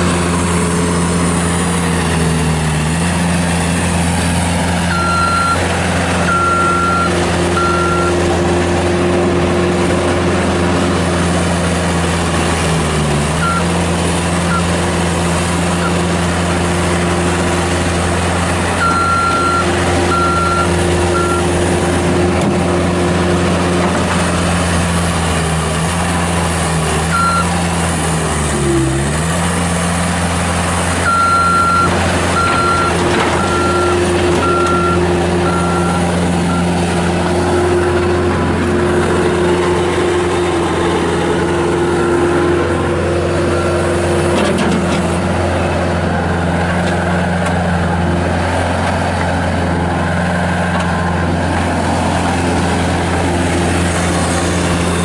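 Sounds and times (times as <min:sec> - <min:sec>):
diesel engine running: 0:00.0 - 0:55.0
backup alarm beeping: 0:04.9 - 0:05.6, 0:06.3 - 0:08.2, 0:13.4 - 0:13.7, 0:18.8 - 0:21.5, 0:27.1 - 0:27.5, 0:31.0 - 0:36.7.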